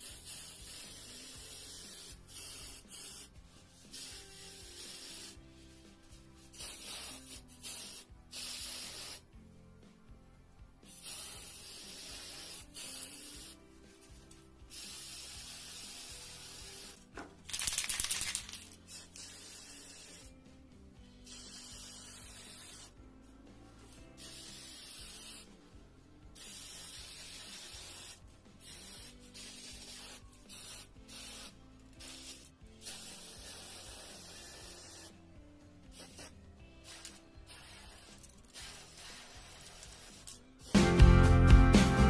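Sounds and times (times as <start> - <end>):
soft background music: 0.0 - 42.0.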